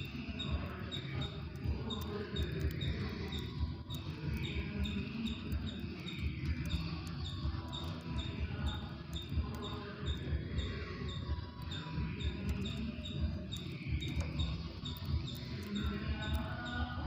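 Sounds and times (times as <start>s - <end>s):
birds pecking seed: 0.0s - 17.0s.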